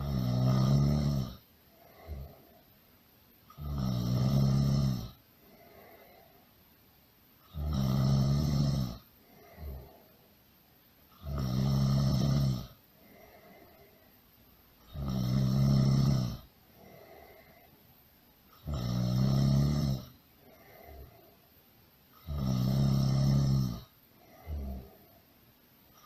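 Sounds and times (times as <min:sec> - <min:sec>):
loud snoring: 0:00.0 - 0:02.5, 0:03.5 - 0:06.2, 0:07.4 - 0:10.1, 0:11.2 - 0:13.9, 0:14.8 - 0:17.6, 0:18.6 - 0:21.2, 0:22.2 - 0:25.1
faint breath: 0:01.6 - 0:02.9, 0:05.3 - 0:06.7, 0:09.1 - 0:10.4, 0:12.9 - 0:14.4, 0:16.6 - 0:18.0, 0:20.3 - 0:21.6, 0:24.0 - 0:25.4.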